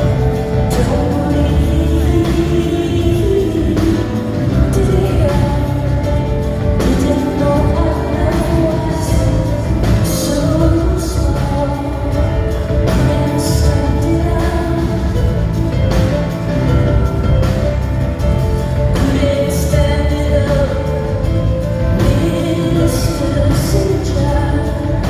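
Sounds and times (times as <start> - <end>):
female singer with rock band: 0.0 - 25.0
heavy bass line: 0.0 - 25.0.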